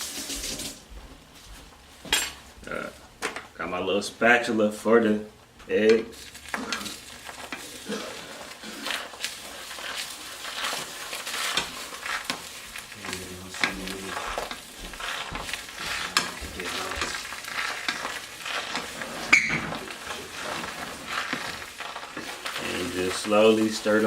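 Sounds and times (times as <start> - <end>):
eggs sizzling in a pot: 0.0 - 0.9, 2.6 - 24.0
spatula scraping a pot: 6.1 - 24.0.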